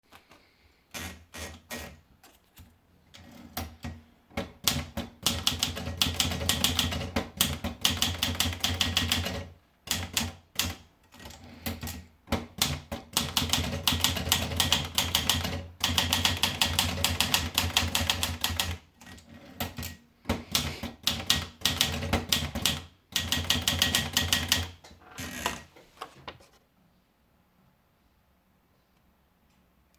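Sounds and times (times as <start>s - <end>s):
manual typewriter typing: 0.9s - 2.0s, 3.2s - 25.7s.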